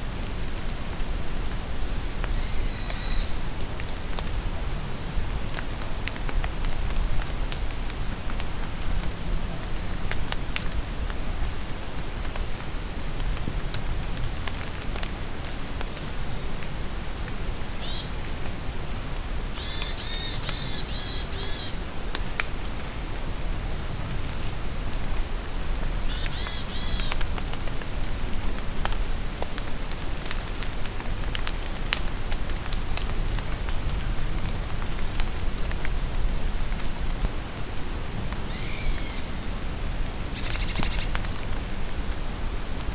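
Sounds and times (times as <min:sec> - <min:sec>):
steady rain: 0:00.0 - 0:42.9
songbird trilling: 0:19.6 - 0:21.8, 0:38.5 - 0:39.5, 0:40.4 - 0:41.1.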